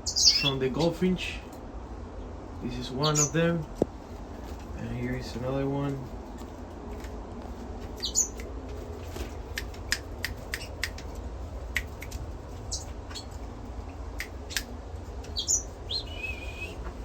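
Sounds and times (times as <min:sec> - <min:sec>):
cage birds chirping: 0:00.0 - 0:17.0
steady low hum: 0:00.0 - 0:17.0
high whistled bird notes: 0:15.4 - 0:16.9.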